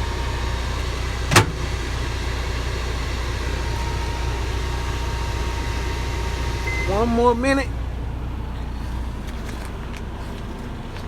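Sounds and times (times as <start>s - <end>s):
microwave oven humming: 0.0s - 10.4s.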